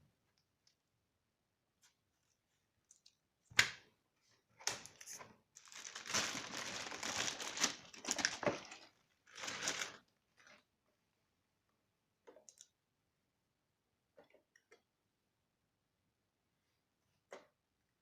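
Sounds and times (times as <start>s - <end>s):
packaging crinkling: 5.6s - 10.5s.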